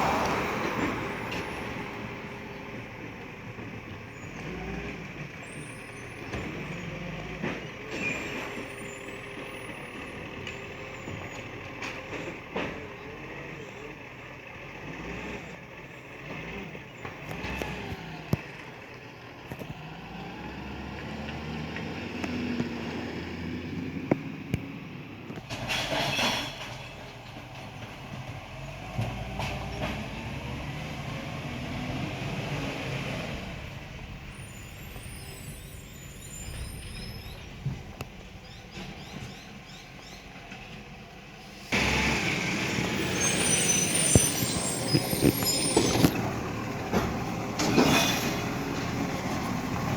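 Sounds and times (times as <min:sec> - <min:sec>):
garbage truck diesel engine: 0:00.0 - 0:49.9
air brake hiss: 0:47.7 - 0:48.4.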